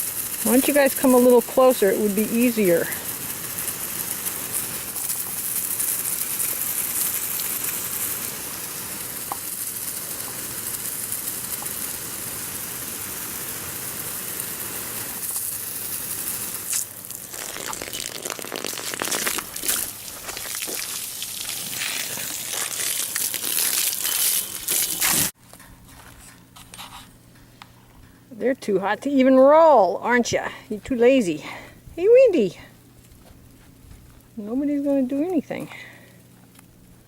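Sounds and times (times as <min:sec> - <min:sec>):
garden hose spraying water: 0:00.0 - 0:25.4, 0:28.3 - 0:37.0
scattered crackles: 0:00.0 - 0:27.8.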